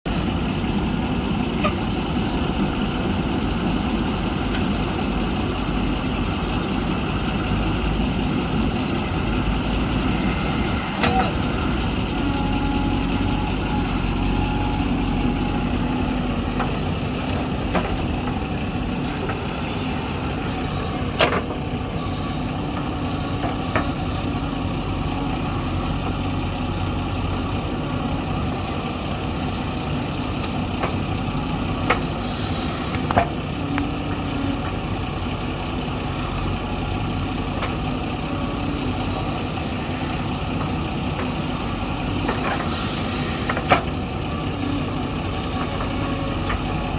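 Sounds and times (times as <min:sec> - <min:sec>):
diesel engine running: 0:00.0 - 0:46.9.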